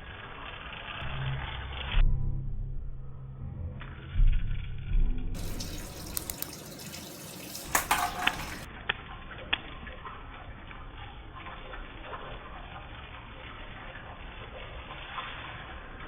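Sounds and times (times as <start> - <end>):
packaging crinkling: 5.4 - 6.6
packaging clicks: 6.0 - 6.6.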